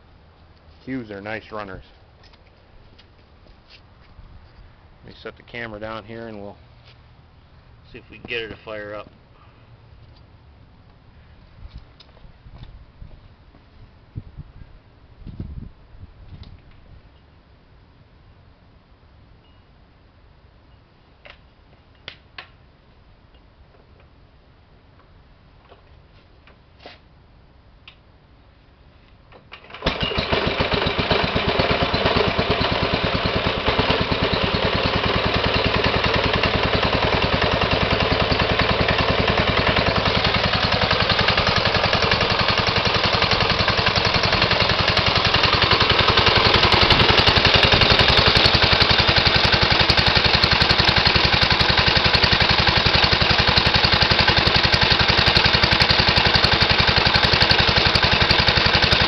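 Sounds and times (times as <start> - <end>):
single-cylinder engine running: 29.5 - 59.0.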